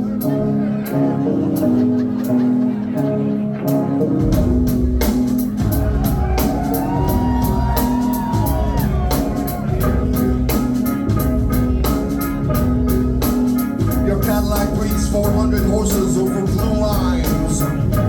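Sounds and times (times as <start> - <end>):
sustained keyboard notes: 0.0 - 18.0
repeating bass line: 4.1 - 18.0
drum beat: 4.2 - 18.0.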